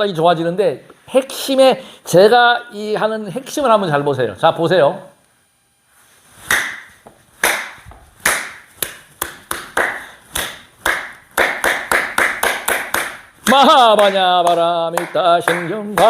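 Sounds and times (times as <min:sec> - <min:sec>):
sharp hand strikes: 0:06.4 - 0:13.1.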